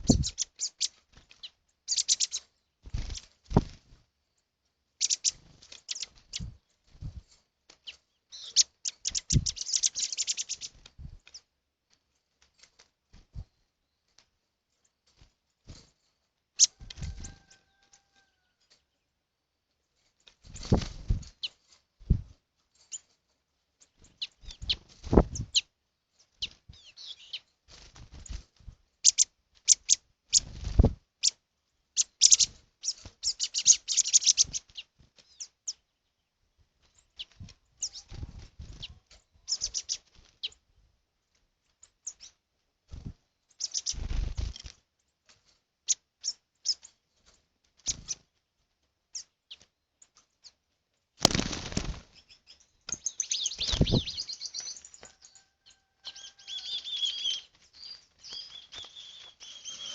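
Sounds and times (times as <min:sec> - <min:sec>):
wild birds chirping: 0:00.0 - 0:11.6, 0:15.7 - 0:19.3, 0:22.7 - 0:28.4, 0:29.0 - 0:40.8, 0:41.8 - 0:45.2, 0:49.0 - 0:59.9.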